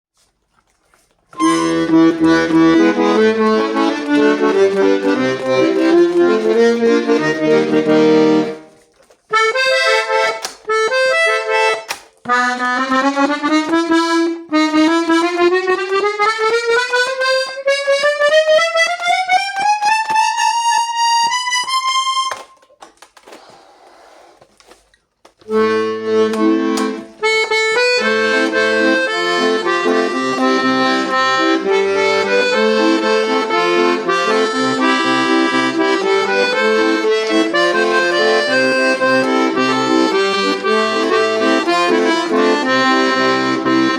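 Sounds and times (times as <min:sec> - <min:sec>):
accordion playing: 0:01.3 - 0:22.6, 0:25.4 - 0:43.9
accordion key clicks: 0:01.4 - 0:08.5, 0:09.3 - 0:22.6, 0:25.5 - 0:43.9.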